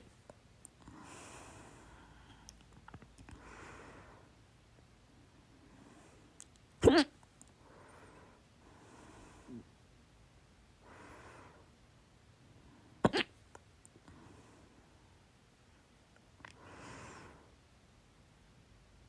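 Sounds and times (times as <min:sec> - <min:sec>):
quiet breathing: 0:00.0 - 0:06.5, 0:07.4 - 0:10.0, 0:10.6 - 0:13.0, 0:13.8 - 0:17.8
woman hiccuping: 0:06.8 - 0:07.2, 0:13.0 - 0:13.3.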